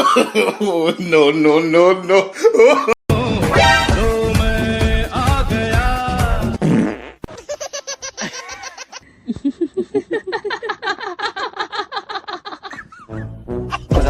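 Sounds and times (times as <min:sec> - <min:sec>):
music: 0:03.1 - 0:06.9, 0:13.0 - 0:14.0
low fart sound: 0:06.6 - 0:07.2.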